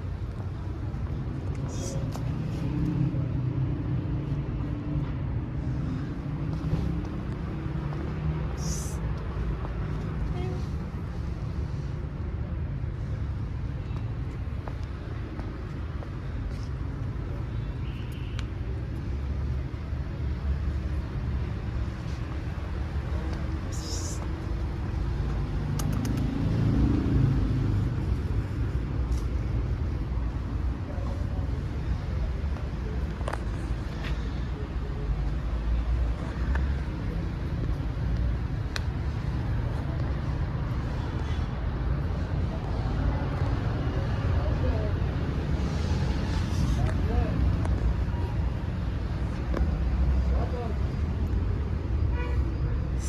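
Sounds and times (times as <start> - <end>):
vehicle engine rumble: 0.0 - 53.0
faint clicks: 25.7 - 26.4.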